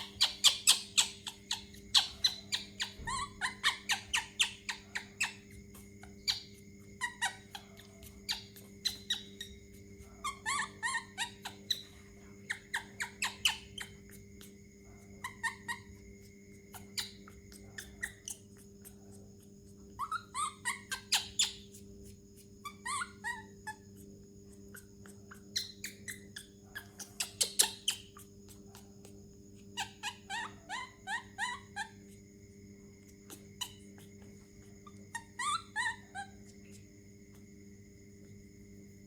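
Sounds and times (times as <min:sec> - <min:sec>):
baby monkey squeaking: 0:00.0 - 0:14.5, 0:15.2 - 0:16.0, 0:16.7 - 0:18.6, 0:19.9 - 0:23.8, 0:24.5 - 0:28.9, 0:29.6 - 0:32.1, 0:33.1 - 0:36.8.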